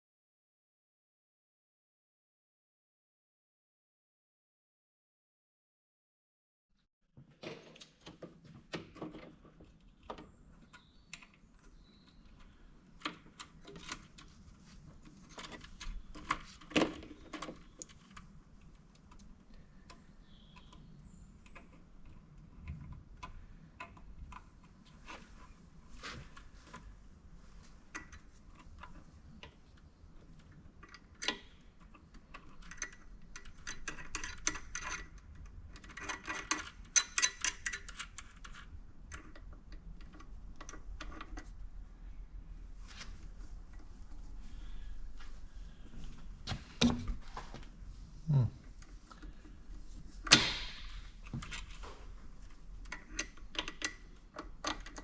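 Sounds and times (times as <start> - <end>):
tools clicking on metal parts: 30.8 - 41.3.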